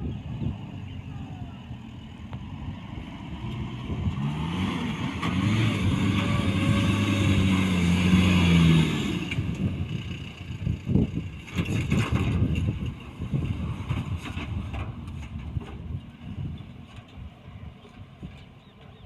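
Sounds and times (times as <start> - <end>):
wind buffeting microphone: 0.0 - 19.0
pickup engine revving hard: 3.0 - 9.7
uneven rumbling with knocks: 10.9 - 19.0.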